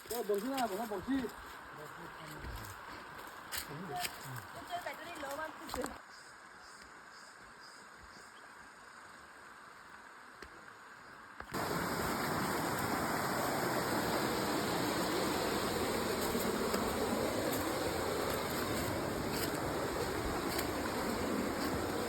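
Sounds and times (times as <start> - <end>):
waterfall rushing water: 11.6 - 22.0.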